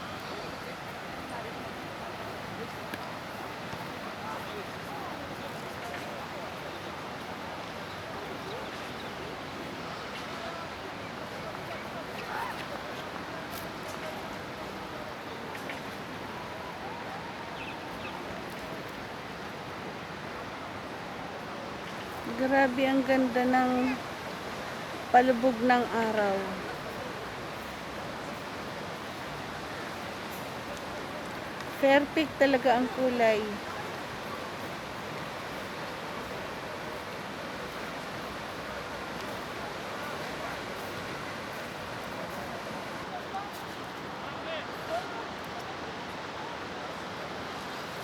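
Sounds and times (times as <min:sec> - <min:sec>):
faint distant voices or chirps: 0:00.0 - 0:18.9
surf washing on beach: 0:00.0 - 0:48.0
wind: 0:00.0 - 0:48.0.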